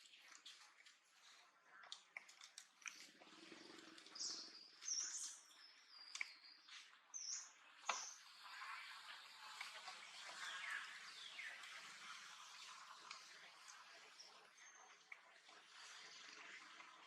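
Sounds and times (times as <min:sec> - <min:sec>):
faint high bird chirps: 0:03.5 - 0:15.4.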